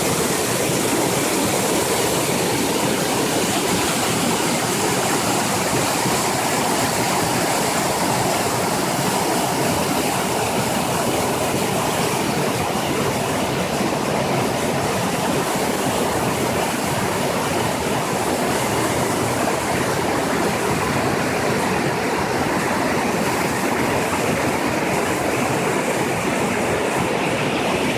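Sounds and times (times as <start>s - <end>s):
water rushing: 0.0s - 27.9s.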